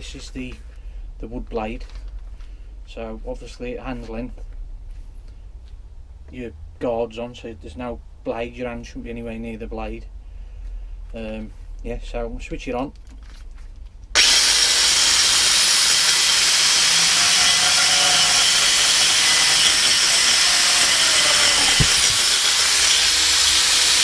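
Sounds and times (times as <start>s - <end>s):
angle grinder cutting wood: 14.2s - 24.0s.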